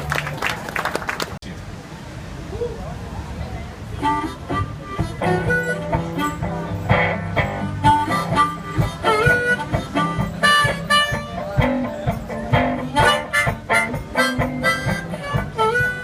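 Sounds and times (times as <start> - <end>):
bluesy harmonica solo: 4.0 - 16.0
strummed guitar: 4.0 - 16.0.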